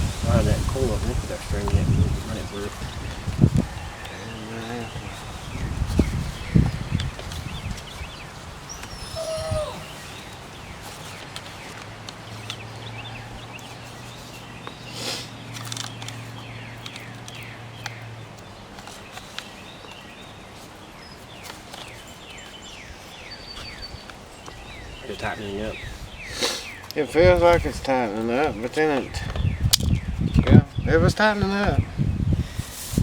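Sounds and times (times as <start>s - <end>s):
small birds chirping: 0.0s - 33.0s
clicks of small parts handled: 15.6s - 16.2s, 29.3s - 30.0s.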